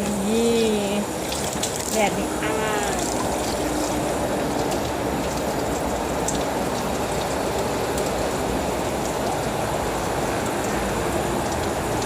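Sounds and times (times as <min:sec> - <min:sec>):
tap water splashing into sink: 0:01.2 - 0:02.2.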